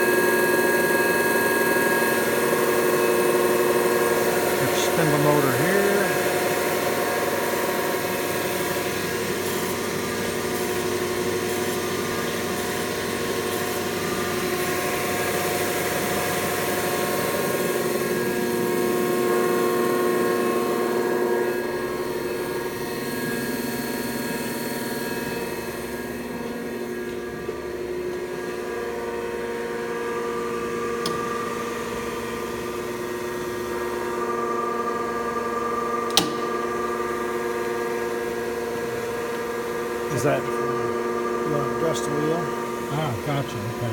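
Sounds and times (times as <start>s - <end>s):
surface grinder running: 0.0s - 43.9s
sharp click: 36.1s - 36.6s.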